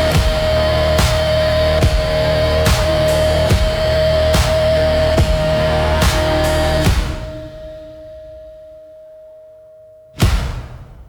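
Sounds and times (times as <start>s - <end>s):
blues-rock music: 0.0s - 7.2s
slow drum beat: 0.0s - 7.5s.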